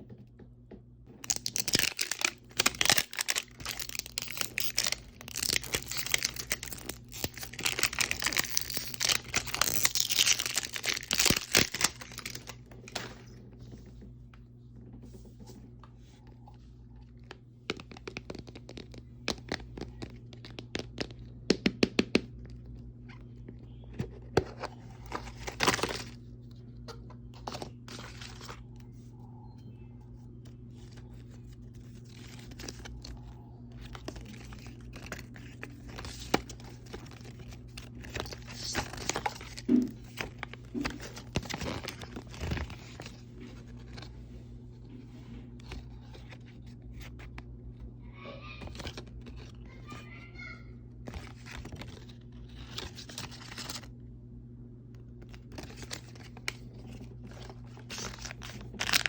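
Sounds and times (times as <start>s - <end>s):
steady low hum: 0.0s - 59.0s
plastic wrapping crinkling and tearing: 1.2s - 13.0s, 25.0s - 26.2s, 30.8s - 44.1s, 50.4s - 53.9s, 55.2s - 59.0s.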